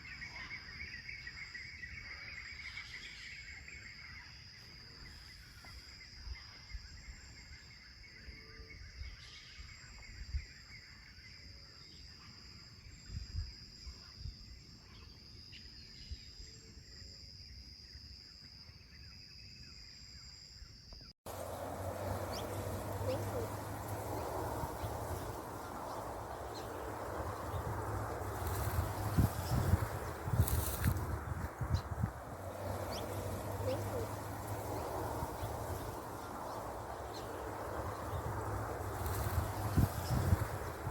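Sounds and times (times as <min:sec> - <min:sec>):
insect drone: 0:00.0 - 0:40.9.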